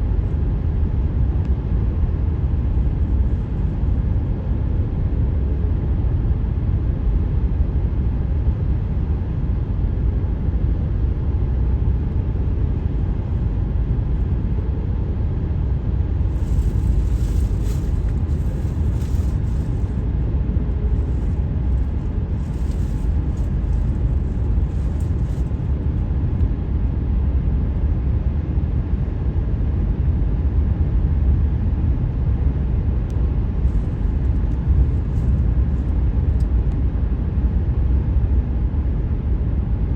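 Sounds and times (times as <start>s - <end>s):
tyre and road noise: 15.8s - 26.4s.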